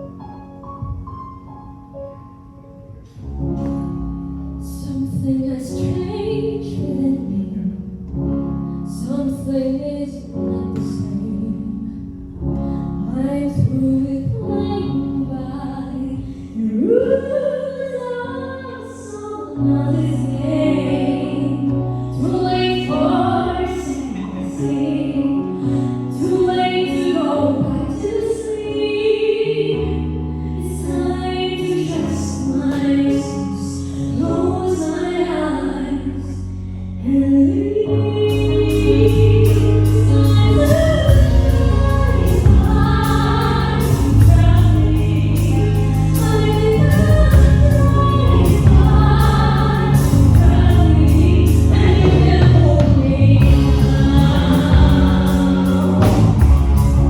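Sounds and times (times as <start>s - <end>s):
person singing: 37.1s - 57.0s
backing band playing: 38.7s - 57.0s.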